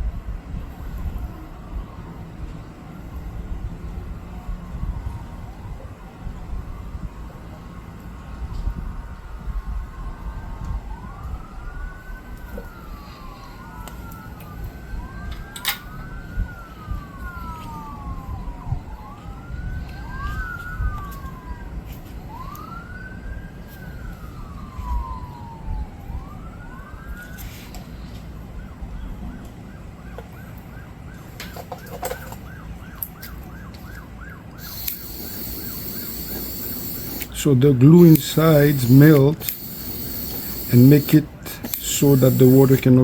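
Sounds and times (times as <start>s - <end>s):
emergency vehicle siren wailing: 0.5s - 43.0s.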